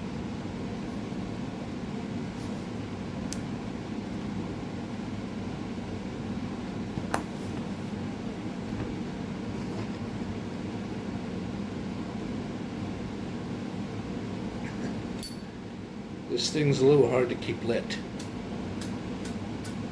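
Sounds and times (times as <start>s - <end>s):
low mechanical room hum: 0.0s - 19.9s.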